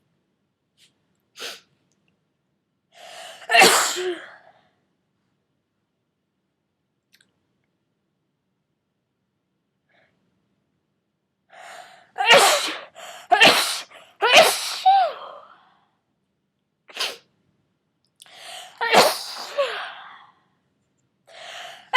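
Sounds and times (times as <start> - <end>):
person sneezing: 3.2 - 4.4, 12.2 - 15.4, 16.9 - 17.2, 18.4 - 20.1.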